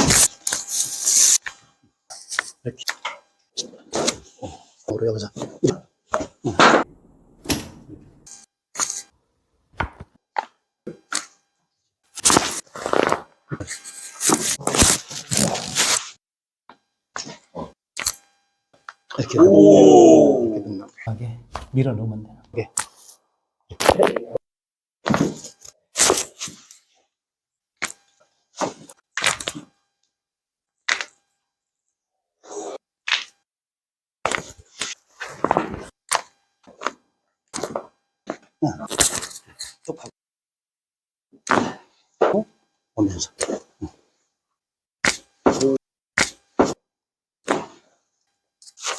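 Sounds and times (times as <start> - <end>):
thuds: 6.6 - 8.3, 9.8 - 10.0, 21.1 - 22.6.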